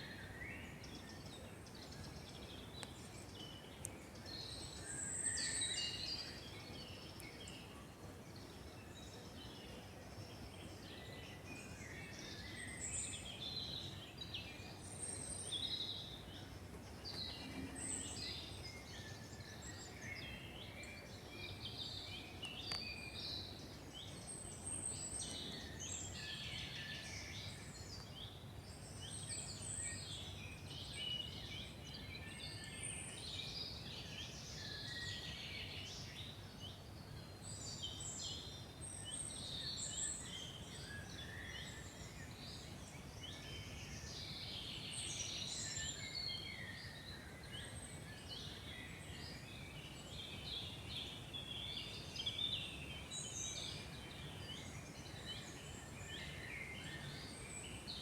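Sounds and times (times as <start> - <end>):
birds singing: 0.0 - 58.0.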